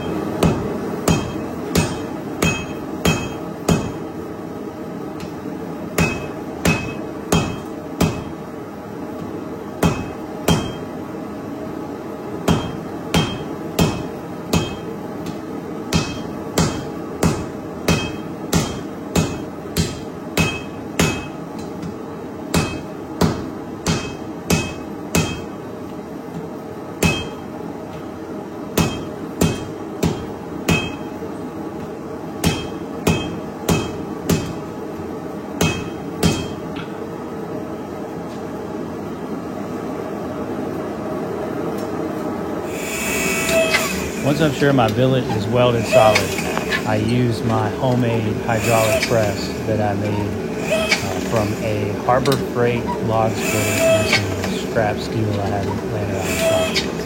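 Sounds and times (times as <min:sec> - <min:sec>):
hammer striking steel on anvil: 0:00.0 - 0:04.0, 0:05.9 - 0:08.4, 0:09.8 - 0:10.9, 0:12.4 - 0:21.7, 0:22.5 - 0:25.5, 0:27.0 - 0:27.4, 0:28.8 - 0:31.1, 0:32.4 - 0:34.6, 0:35.6 - 0:36.7.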